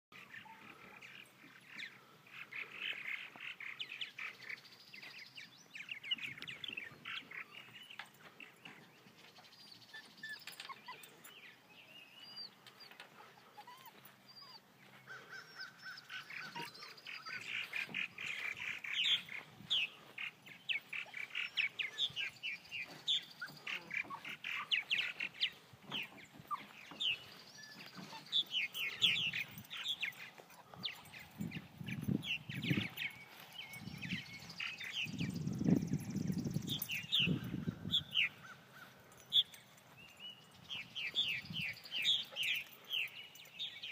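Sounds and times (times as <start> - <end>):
birds chirping and chattering: 0.1 - 43.9.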